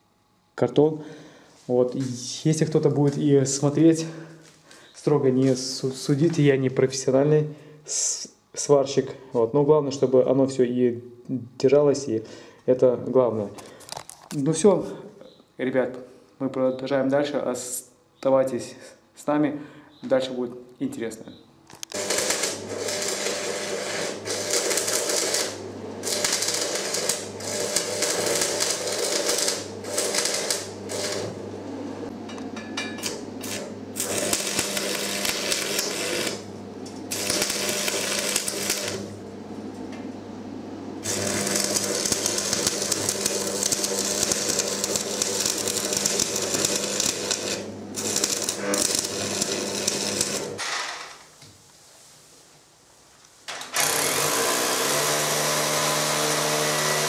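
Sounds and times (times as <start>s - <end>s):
power tool rasping: 21.9s - 31.4s, 33.1s - 36.5s, 37.1s - 39.2s, 41.0s - 51.1s, 53.8s - 57.0s.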